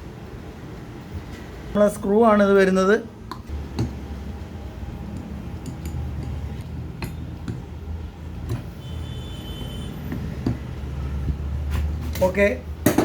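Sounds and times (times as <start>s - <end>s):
steady low hum: 0.0s - 12.0s
high ringing tone: 8.8s - 10.0s.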